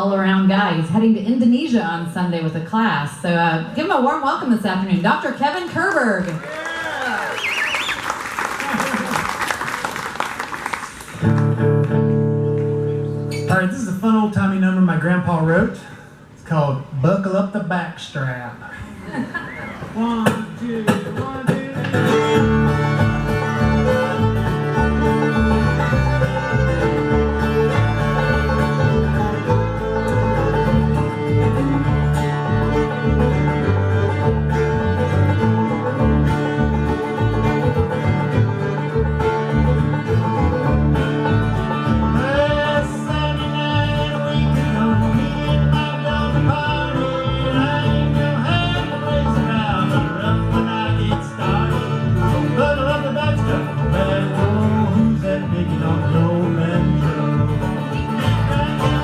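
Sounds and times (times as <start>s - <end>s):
string band playing fast tune: 20.0s - 59.0s
fiddle melody: 21.2s - 59.0s.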